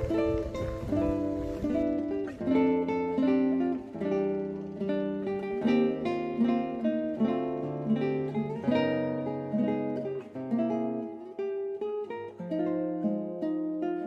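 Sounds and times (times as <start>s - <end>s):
plucked acoustic guitar melody: 0.0s - 14.0s.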